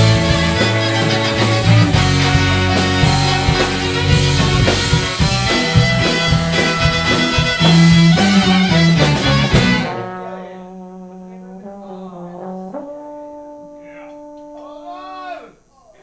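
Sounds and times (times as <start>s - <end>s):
steady drum beat: 0.0s - 10.3s
live band playing: 0.0s - 15.0s.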